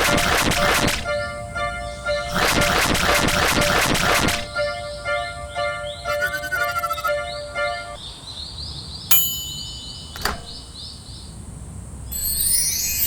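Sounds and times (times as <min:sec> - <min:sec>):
high chirp: 0:00.0 - 0:08.3, 0:09.1 - 0:11.0
sharp metallic clangs: 0:09.1 - 0:10.9
railroad crossing bell ringing: 0:09.1 - 0:11.0.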